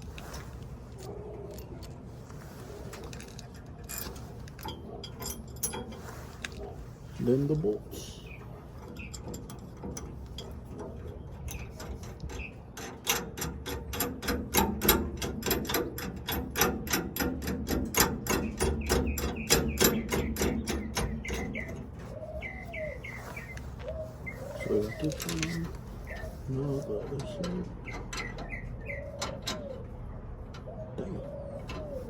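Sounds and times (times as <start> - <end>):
ratchet wrench clicking: 11.5 - 21.1
light handling ticks: 18.0 - 29.6.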